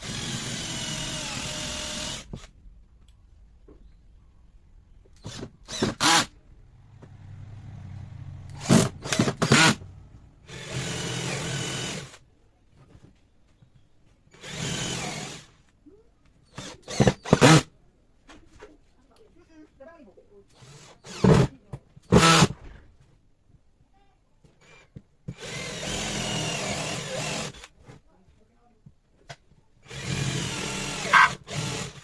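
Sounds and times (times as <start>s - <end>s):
power tool on wood: 0.0s - 2.5s, 5.2s - 6.3s, 8.2s - 12.2s, 14.3s - 15.6s, 16.6s - 17.7s, 20.5s - 21.5s, 22.1s - 22.6s, 24.6s - 27.7s, 29.8s - 32.0s.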